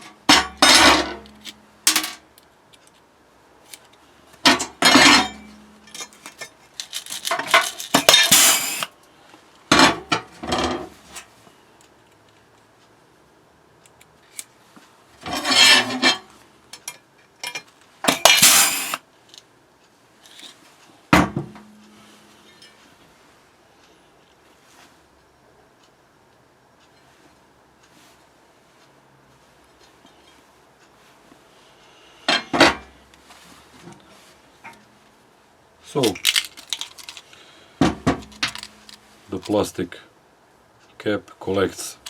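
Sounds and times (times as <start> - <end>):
metal clatter: 0.0 - 2.2, 4.5 - 8.9, 15.2 - 16.2, 16.8 - 19.0, 36.0 - 37.2, 38.2 - 39.6
pneumatic riveter air bursts: 7.9 - 8.9, 18.1 - 19.0.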